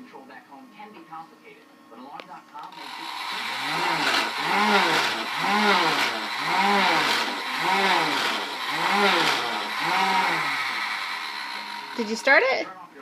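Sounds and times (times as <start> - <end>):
toy lawnmower electronic engine sound: 2.7 - 12.6.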